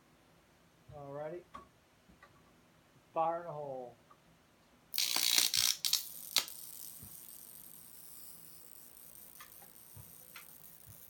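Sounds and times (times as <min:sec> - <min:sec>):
electrical sparks cracking: 0:04.9 - 0:11.0.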